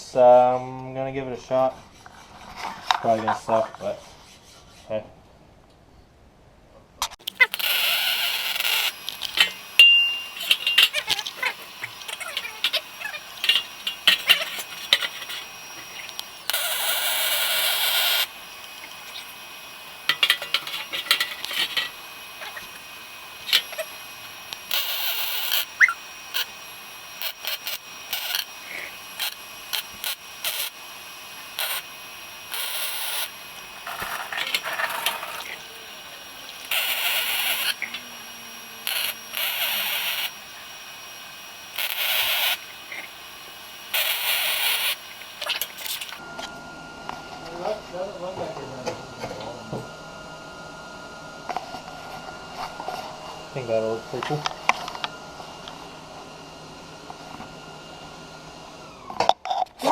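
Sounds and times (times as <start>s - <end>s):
welder hissing: 7.1s - 46.3s.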